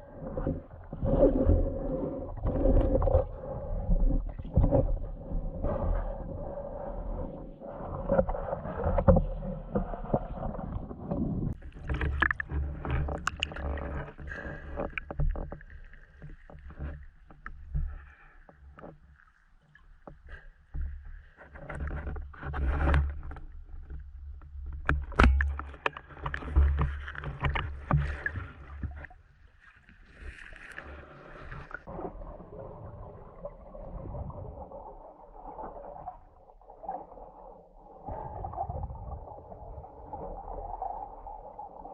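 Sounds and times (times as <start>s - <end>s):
water sloshing around camera: 0.0s - 41.9s
knocks and clicks: 24.8s - 28.2s.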